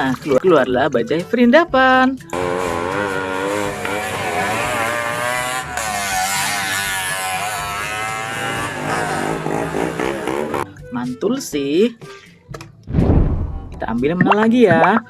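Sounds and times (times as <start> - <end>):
auto-rickshaw engine revving: 2.3 - 10.7.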